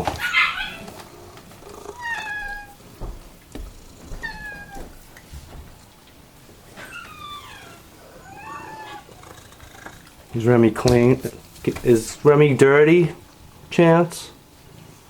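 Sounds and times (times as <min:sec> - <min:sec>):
pet crying: 0:00.0 - 0:02.8, 0:04.0 - 0:05.0, 0:06.8 - 0:10.4.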